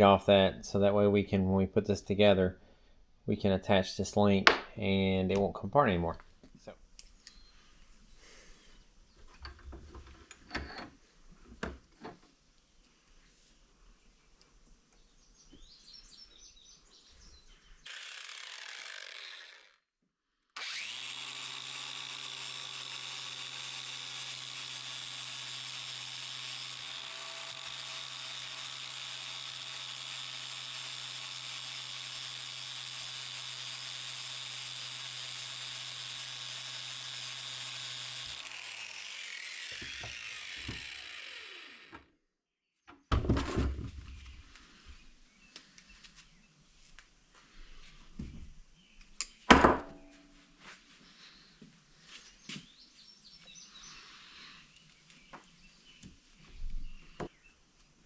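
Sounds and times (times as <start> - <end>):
electric grinder grinding metal: 17.9 - 19.8, 20.6 - 42.1.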